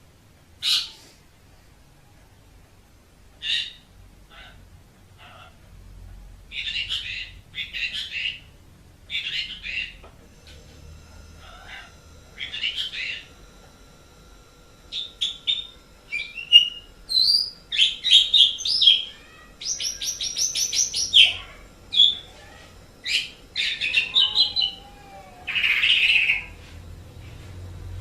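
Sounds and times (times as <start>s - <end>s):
starling singing: 6.5s - 8.5s, 9.1s - 27.2s
harsh scratchy bird call: 9.1s - 13.4s, 14.9s - 26.6s.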